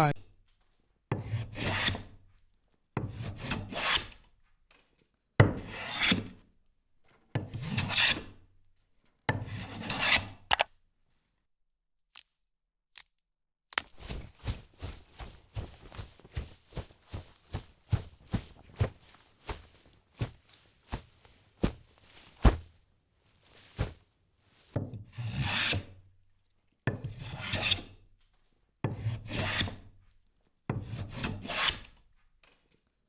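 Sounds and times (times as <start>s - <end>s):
branches and bark scraping: 13.8s - 24.8s.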